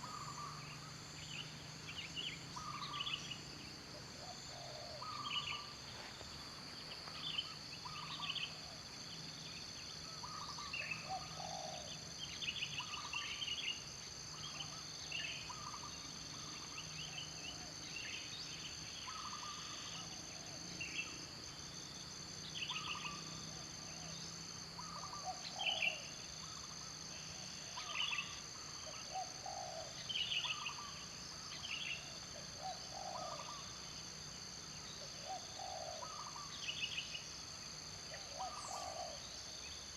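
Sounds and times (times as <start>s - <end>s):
birds chirping: 34.9s - 37.1s, 38.1s - 39.3s.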